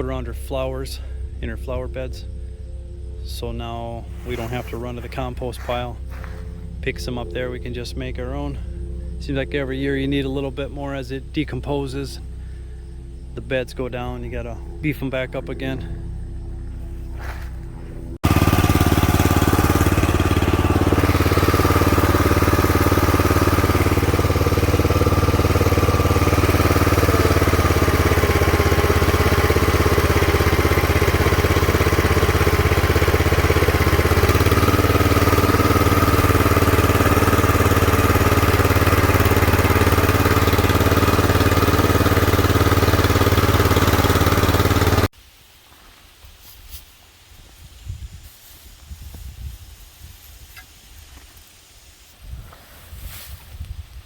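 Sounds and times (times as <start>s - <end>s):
chipper shredder engine running: 4.1s - 6.8s, 16.6s - 45.1s.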